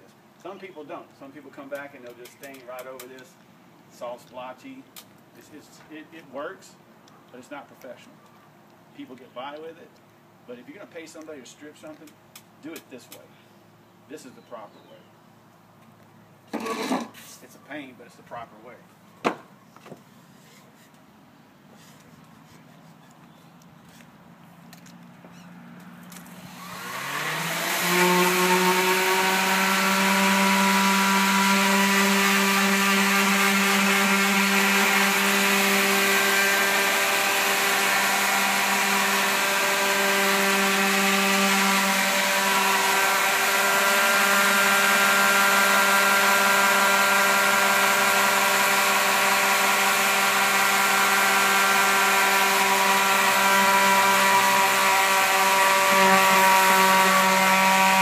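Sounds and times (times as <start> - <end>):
electric sander whining: 26.1 - 58.0
sandpaper rasping on wood: 49.9 - 58.0.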